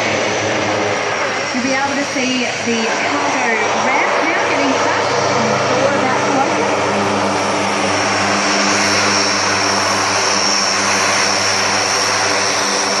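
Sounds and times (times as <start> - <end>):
high turbine whine: 0.0 - 13.0
turboprop engines droning: 0.0 - 13.0.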